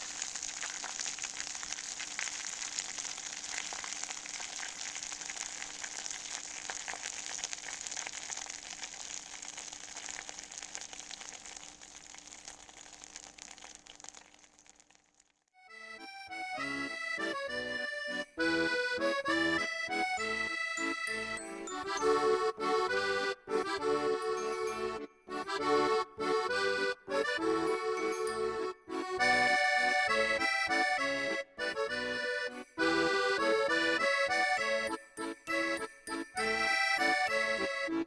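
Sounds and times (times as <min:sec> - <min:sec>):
butter sizzling in a saucepan: 0:00.0 - 0:15.4
background music: 0:15.7 - 0:38.0.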